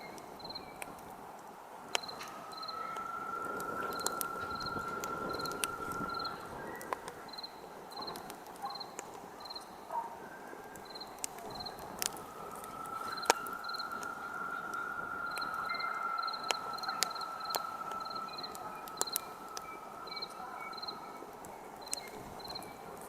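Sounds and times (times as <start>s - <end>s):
insect steady trill: 0.0s - 0.8s, 1.9s - 9.9s, 10.6s - 23.0s
crickets chirping: 0.0s - 1.3s, 1.9s - 23.0s
campfire crackling and popping: 0.0s - 23.0s.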